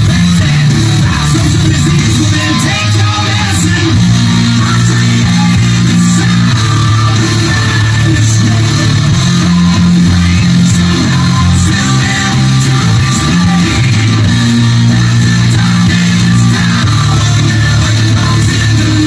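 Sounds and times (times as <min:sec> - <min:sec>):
hard rock music: 0:00.0 - 0:19.0.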